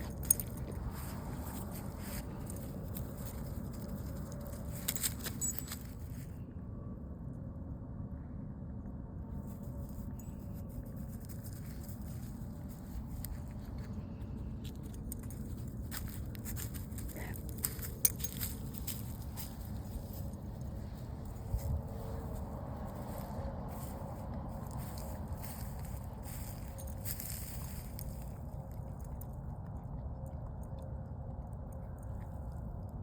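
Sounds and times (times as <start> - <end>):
dogs rustling and clicking: 0.0 - 6.2, 14.6 - 22.1
low outdoor rumble: 0.0 - 33.0.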